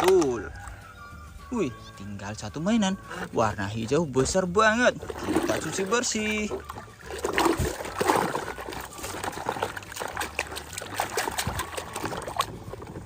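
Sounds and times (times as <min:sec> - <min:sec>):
water trickling and splashing: 0:02.6 - 0:13.0.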